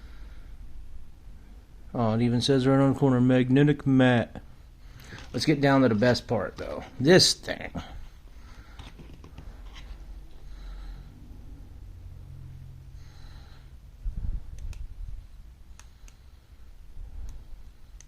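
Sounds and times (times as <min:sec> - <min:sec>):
breathing through the nose: 0:10.4 - 0:11.2, 0:13.0 - 0:14.5.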